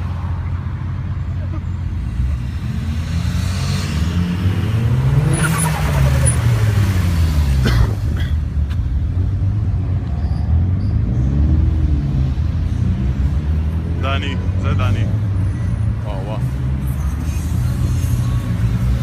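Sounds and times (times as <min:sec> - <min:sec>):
car engines droning: 0:00.0 - 0:19.0.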